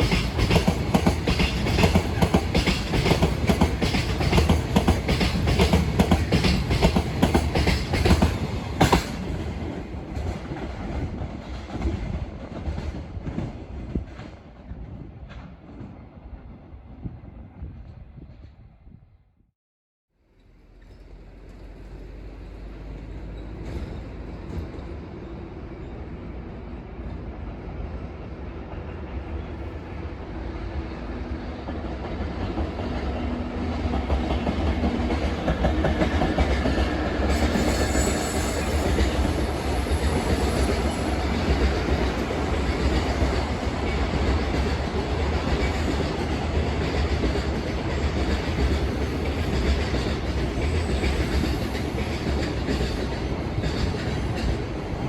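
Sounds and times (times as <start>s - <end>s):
electric locomotive passing: 0.0s - 17.0s, 20.3s - 55.0s
wheels rumbling on rails: 20.3s - 55.0s.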